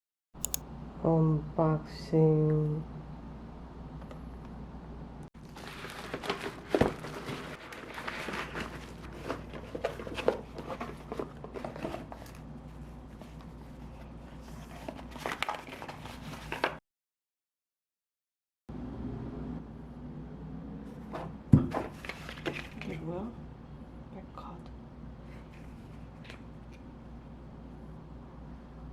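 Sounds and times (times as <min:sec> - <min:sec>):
packaging rustling and scraping: 0:05.4 - 0:16.8, 0:21.7 - 0:23.0.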